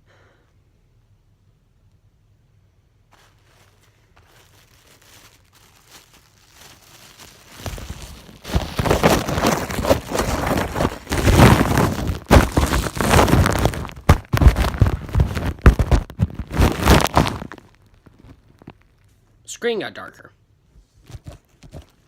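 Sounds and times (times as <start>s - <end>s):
crinkling and rustling: 3.0s - 19.4s, 20.9s - 22.0s.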